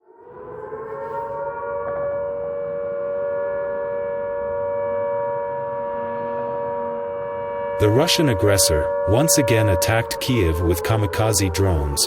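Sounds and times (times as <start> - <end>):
air-raid siren steady tone: 0.0 - 12.0.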